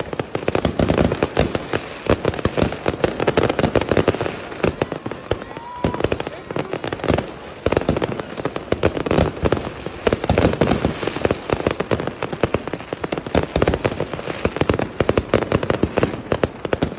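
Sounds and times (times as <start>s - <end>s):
continuous crackling haze: 0.0s - 16.9s
fireworks and firecrackers banging: 0.0s - 16.9s.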